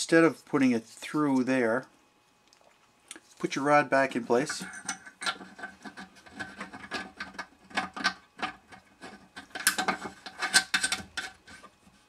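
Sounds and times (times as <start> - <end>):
metal rod scraping drain parts: 4.0 - 11.7.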